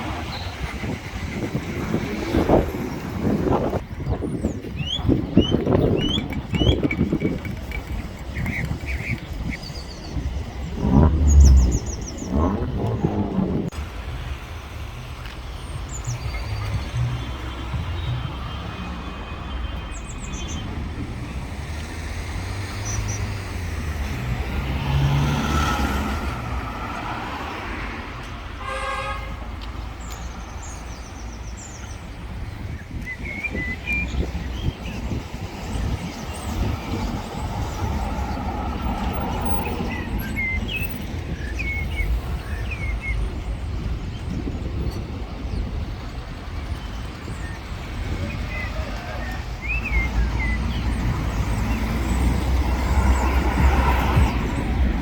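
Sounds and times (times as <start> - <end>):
street traffic rumbling: 0.0 - 55.0
small birds chirping: 3.9 - 13.4
vehicle passing: 10.1 - 14.8, 21.2 - 28.1, 48.4 - 55.0
car horn toot: 28.6 - 29.5.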